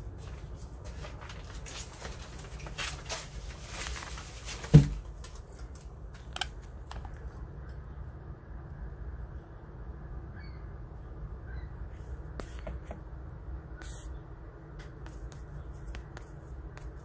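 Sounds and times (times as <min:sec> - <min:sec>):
scratchy rustling: 0:00.1 - 0:05.7.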